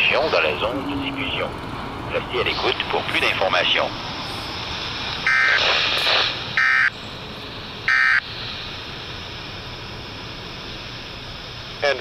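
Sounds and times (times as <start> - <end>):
radio hiss: 0.0 - 1.5, 2.1 - 12.0
warbling data tone bursts: 2.1 - 7.1, 7.9 - 8.3.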